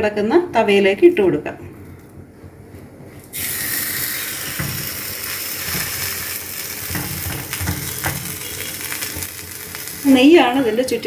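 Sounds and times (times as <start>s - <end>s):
dough sizzling on hot griddle: 3.3s - 11.0s.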